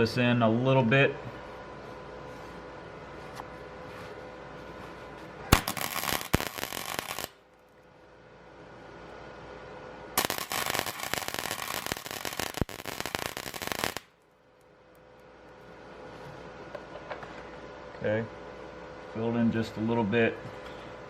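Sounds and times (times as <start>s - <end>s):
welding arc crackling: 5.5s - 7.6s, 10.2s - 14.3s.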